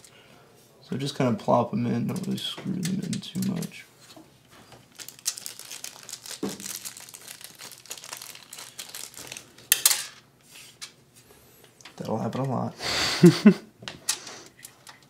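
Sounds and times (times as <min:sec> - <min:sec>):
plastic crinkling and rustling: 0:02.0 - 0:11.0.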